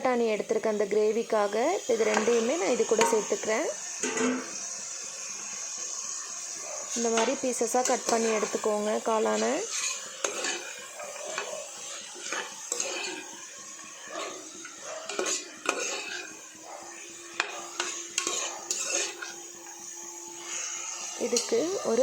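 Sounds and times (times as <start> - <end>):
spoon scraping and knocking pot: 3.0 - 3.4, 4.0 - 4.6, 9.3 - 13.3, 14.1 - 16.3, 17.4 - 19.4.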